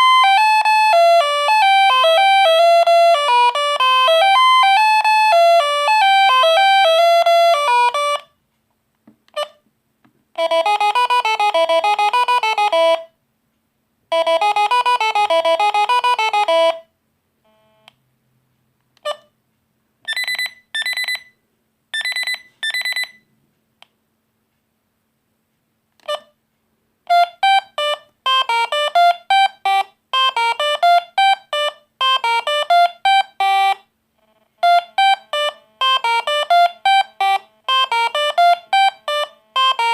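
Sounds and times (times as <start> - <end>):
mobile phone ringtone melodies: 0.0 - 8.3, 10.4 - 13.2, 14.1 - 16.9, 20.1 - 21.4, 22.0 - 23.2, 27.1 - 39.9
paired beeps: 20.0 - 23.3.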